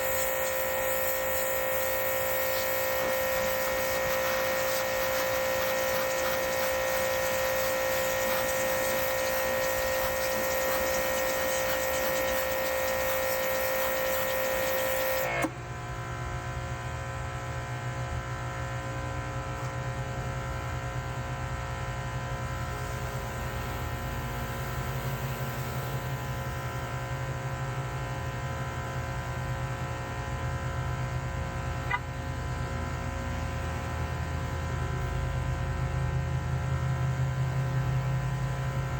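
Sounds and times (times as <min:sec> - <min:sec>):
power washer whining: 0:00.0 - 0:15.5.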